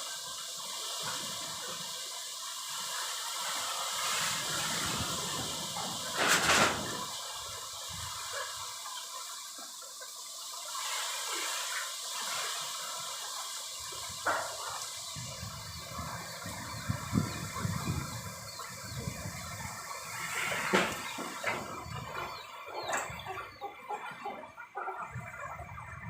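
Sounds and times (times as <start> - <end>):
heavy rain: 0.0 - 9.8
strong wind: 15.1 - 20.9, 25.1 - 26.0.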